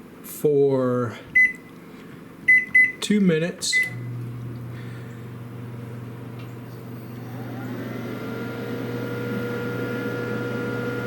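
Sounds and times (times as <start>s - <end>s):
rising microwave whine: 3.6s - 11.0s
microwave oven hum: 3.7s - 11.0s.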